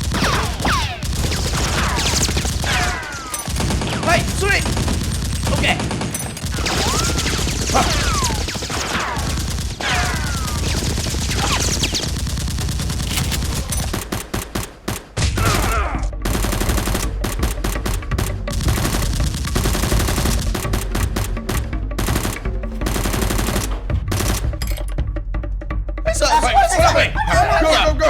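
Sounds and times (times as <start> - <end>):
rapid automatic gunfire: 0.0 - 15.6, 16.2 - 24.6
gunshots: 0.0 - 24.7.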